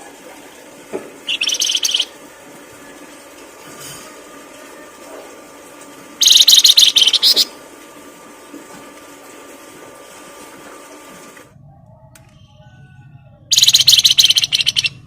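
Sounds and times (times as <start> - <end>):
songbird trilling: 1.3 - 2.1, 6.2 - 7.5, 13.5 - 15.0
faint steady hum: 11.4 - 15.0.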